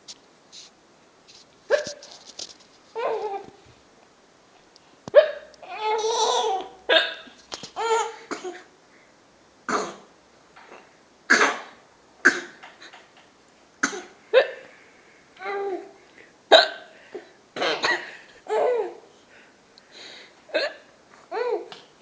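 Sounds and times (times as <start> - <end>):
woman hiccupping: 1.7 - 2.1.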